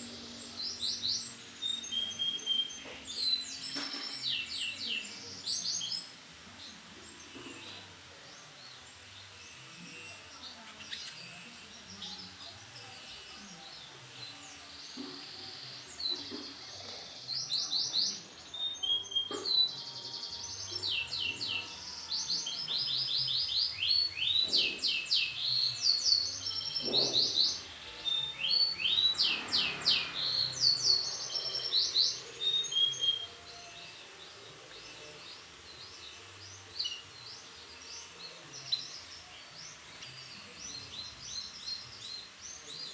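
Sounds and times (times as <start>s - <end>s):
canary trilling and chirping: 9.0s - 16.5s, 17.2s - 41.6s.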